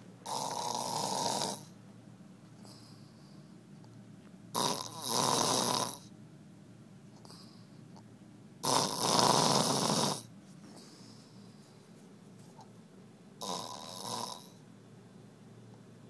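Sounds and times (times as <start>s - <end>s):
man snoring: 0.2s - 1.8s, 4.6s - 6.1s, 8.6s - 10.3s, 13.4s - 14.6s
faint breathing: 2.6s - 3.7s, 7.1s - 8.0s, 10.6s - 12.7s.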